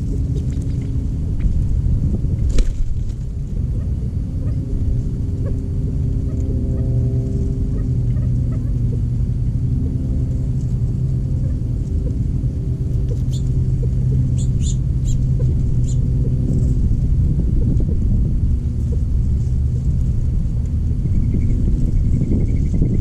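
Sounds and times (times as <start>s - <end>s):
faint hum: 0.0s - 23.0s
steady low rumble: 0.0s - 23.0s.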